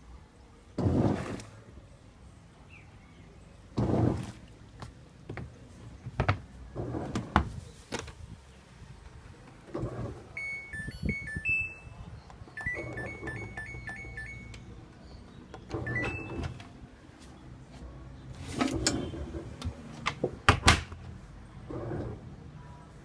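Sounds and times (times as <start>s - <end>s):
electronic beep tune: 10.4s - 14.7s.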